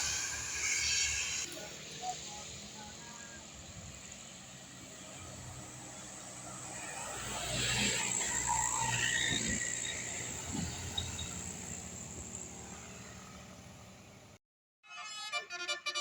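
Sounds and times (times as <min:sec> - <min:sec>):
vehicle passing by: 0:03.4 - 0:14.4.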